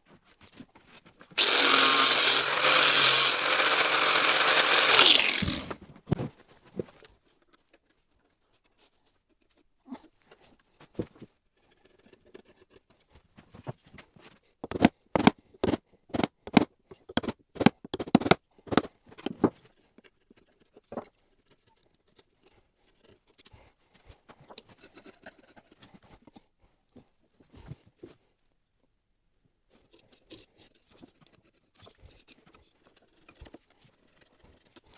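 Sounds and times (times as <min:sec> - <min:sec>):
hand tool strokes on wood: 0:01.4 - 0:05.8.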